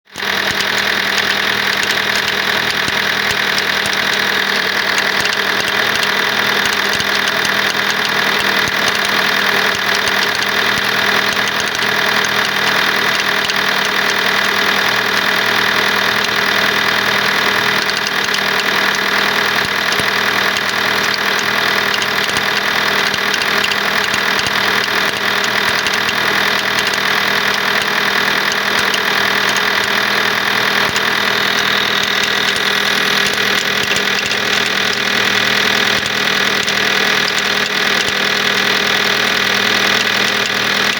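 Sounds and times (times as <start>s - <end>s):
engine knocking clatter: 0.0s - 40.9s
diesel engine idling: 0.1s - 40.9s.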